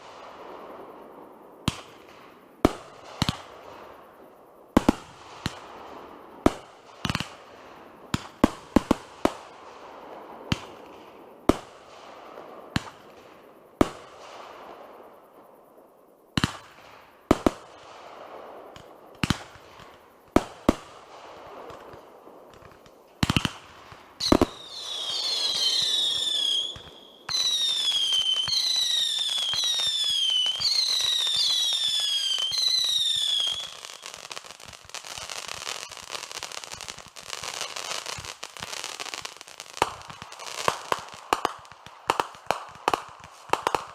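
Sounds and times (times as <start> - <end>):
steady hiss: 0.0 - 43.9
fireworks bangs: 16.4 - 43.9
high falling whistles: 24.2 - 34.4.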